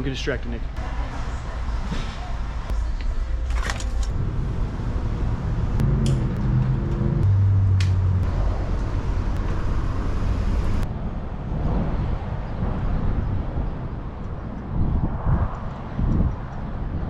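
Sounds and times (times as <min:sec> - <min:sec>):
wind rumble on microphone: 0:04.1 - 0:17.0
vehicle engine droning past: 0:04.5 - 0:10.8.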